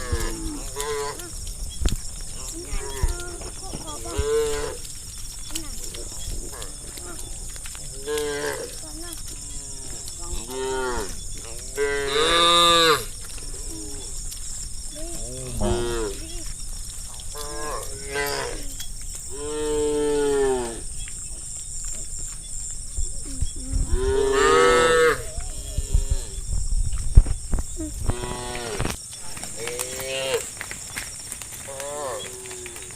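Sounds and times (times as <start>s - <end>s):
cows mooing: 0.0s - 1.4s, 6.1s - 14.1s, 15.1s - 16.4s, 17.3s - 20.9s, 23.9s - 26.4s.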